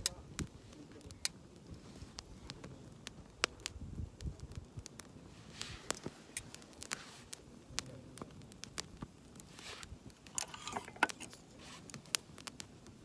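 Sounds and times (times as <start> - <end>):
campfire crackling and popping: 0.0 - 13.0
rustling: 9.4 - 12.2.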